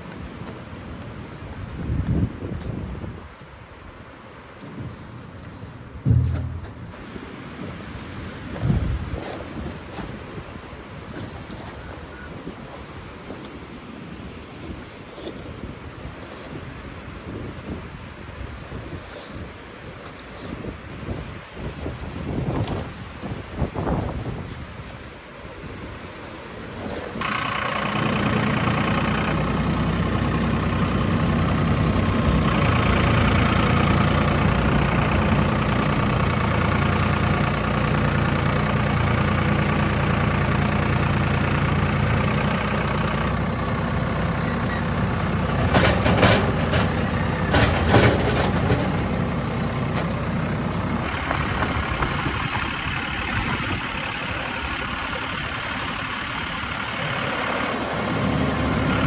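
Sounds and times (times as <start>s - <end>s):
sharp knocks: 6.0s - 7.2s
motor engine running: 6.0s - 7.7s, 27.2s - 59.0s.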